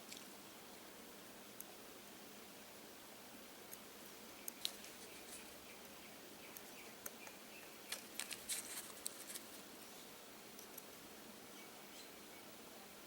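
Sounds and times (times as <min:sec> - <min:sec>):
small clicks and crackles: 0:04.4 - 0:05.9, 0:06.5 - 0:09.9, 0:10.6 - 0:11.0.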